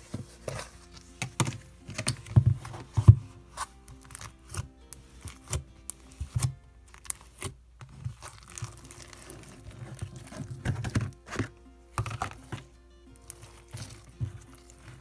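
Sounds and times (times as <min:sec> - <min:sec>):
slime crackling and popping: 0:03.6 - 0:11.0.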